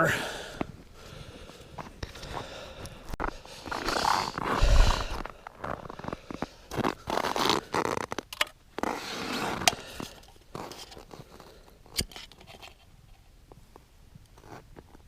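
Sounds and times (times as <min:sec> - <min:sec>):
crunching and scraping: 0:01.4 - 0:12.9.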